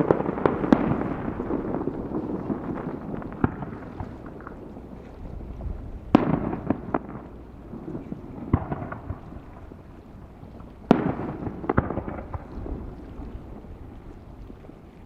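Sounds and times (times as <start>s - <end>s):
fireworks bursting: 0.0s - 4.8s, 5.4s - 9.2s, 10.9s - 13.3s.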